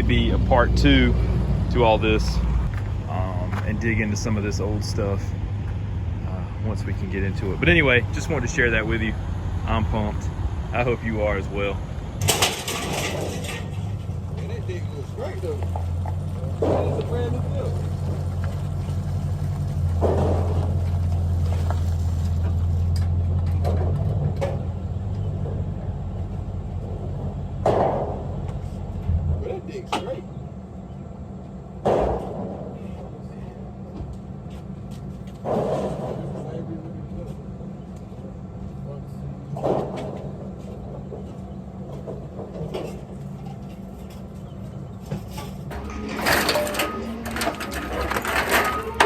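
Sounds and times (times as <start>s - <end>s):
vehicle engine humming: 0.0s - 49.0s
knocks and rattles: 6.6s - 25.7s, 39.5s - 49.0s
loud clatter: 10.8s - 24.8s, 45.0s - 49.0s.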